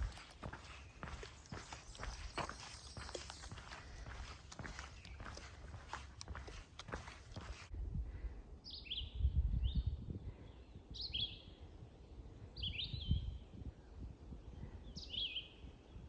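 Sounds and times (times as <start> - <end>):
songbird chirping: 0.0 - 7.7.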